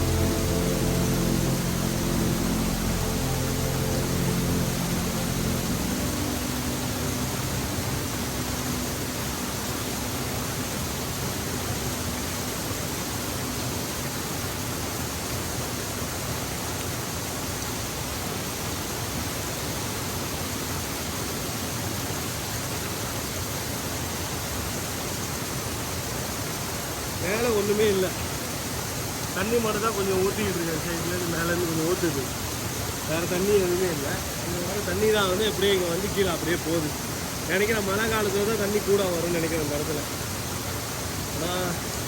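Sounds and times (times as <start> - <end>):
low hum: 0.0 - 14.8
waterfall splashing over rocks: 0.0 - 42.0.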